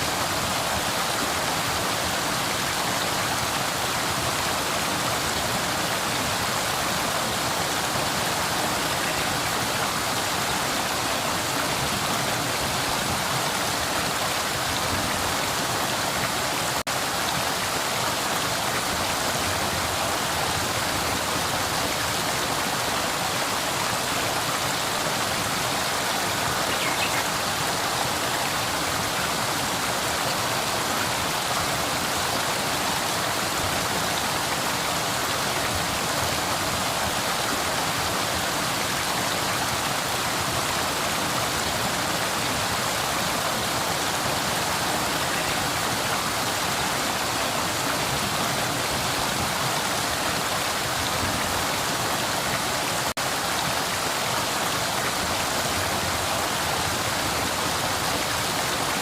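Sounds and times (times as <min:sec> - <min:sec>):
river water flowing: 0:00.0 - 0:59.0.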